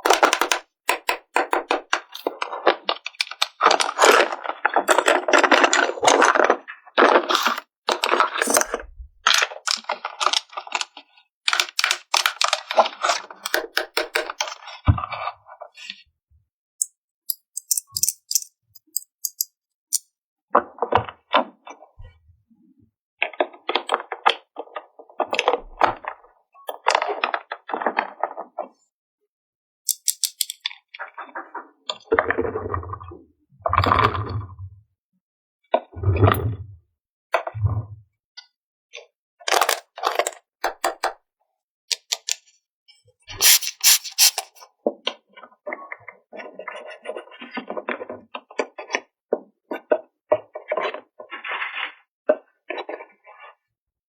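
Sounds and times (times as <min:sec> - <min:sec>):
plastic toy pieces clicking: 0:00.0 - 0:02.3, 0:11.5 - 0:14.4, 0:16.8 - 0:20.0, 0:29.9 - 0:30.6, 0:43.4 - 0:44.5.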